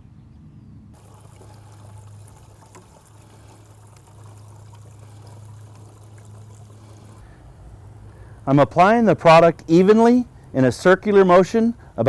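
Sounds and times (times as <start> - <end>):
low hum: 0.7 - 8.5
sprayer mist hissing on concrete: 1.0 - 8.4.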